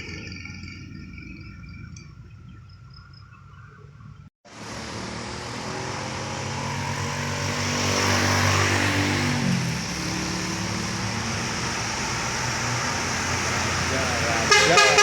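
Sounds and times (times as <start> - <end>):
heavy diesel vehicle driving past: 4.5 - 15.0.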